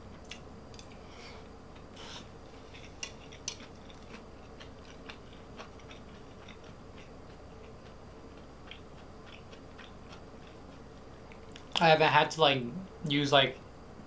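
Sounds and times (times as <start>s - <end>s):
person chewing: 0.1s - 11.8s.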